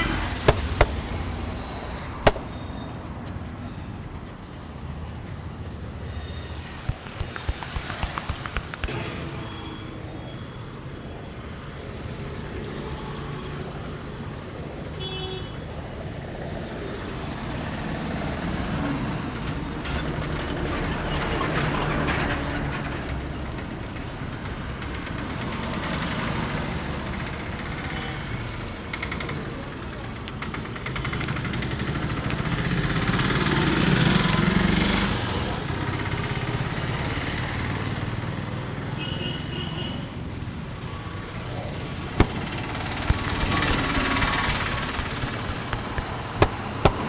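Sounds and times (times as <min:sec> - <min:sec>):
street traffic: 0:00.0 - 0:47.0
sharp taps: 0:00.5 - 0:01.4, 0:02.2 - 0:02.6, 0:06.8 - 0:09.1, 0:42.2 - 0:47.0.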